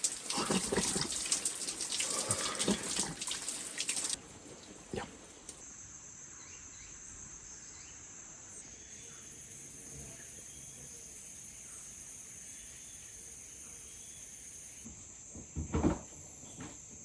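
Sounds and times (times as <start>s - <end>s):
insects chorus shrill drone: 5.6s - 15.4s.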